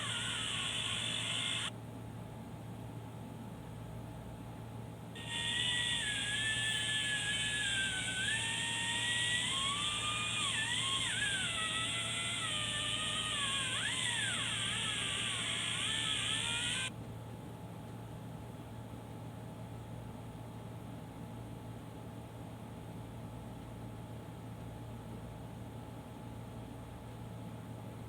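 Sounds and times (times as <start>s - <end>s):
angle grinder whining: 0.0s - 1.7s, 5.2s - 16.9s.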